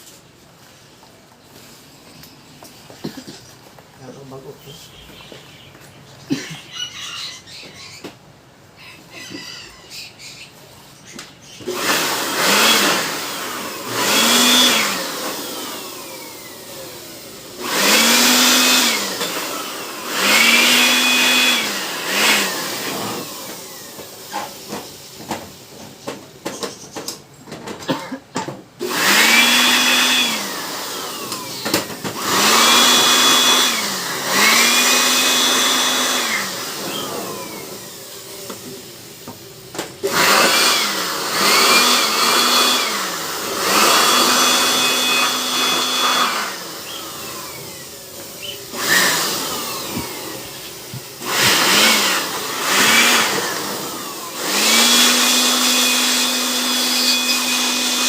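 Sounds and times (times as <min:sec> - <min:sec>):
small electric motor tool spinning: 0:11.6 - 0:24.6, 0:28.8 - 0:38.8, 0:40.0 - 0:58.0.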